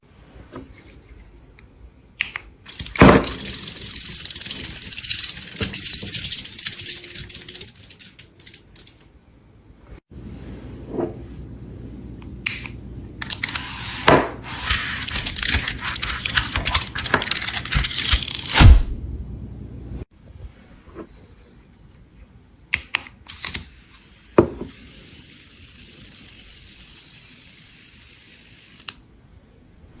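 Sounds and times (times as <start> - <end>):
mechanical rattling buzz: 2.7 - 9.0.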